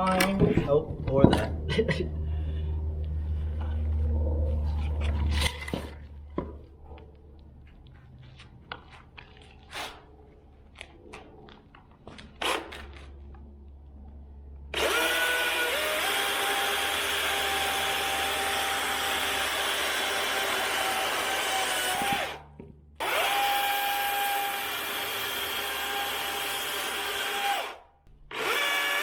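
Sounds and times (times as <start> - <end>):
knocks and clatter: 0.0 - 1.7
electric chainsaw motor whirring: 14.7 - 22.4, 23.0 - 29.0.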